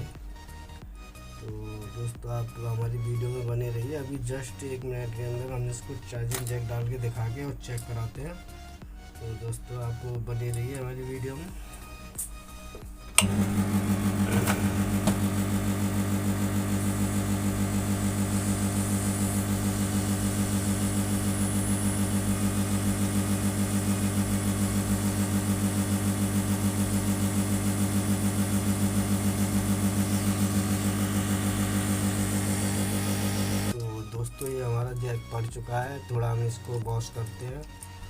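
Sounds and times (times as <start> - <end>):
hot air gun humming: 12.6 - 33.8.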